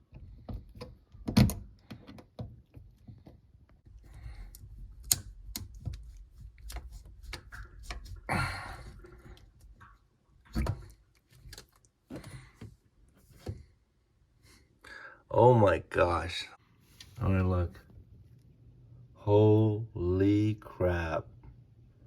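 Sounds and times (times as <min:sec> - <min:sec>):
plastic parts clicking and knocking: 0:00.0 - 0:08.2.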